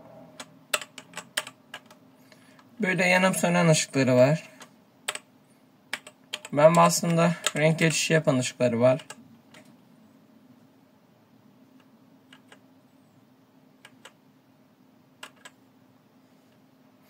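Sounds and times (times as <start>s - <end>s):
faint hum: 0.0s - 17.0s
mechanical keyboard key clicks: 0.4s - 2.0s, 5.9s - 6.5s, 15.2s - 15.6s.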